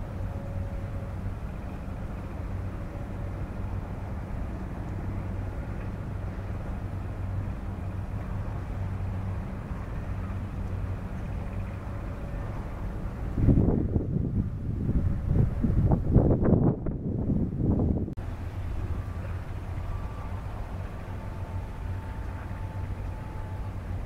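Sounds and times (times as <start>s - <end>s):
diesel engine humming: 17.4s - 24.0s.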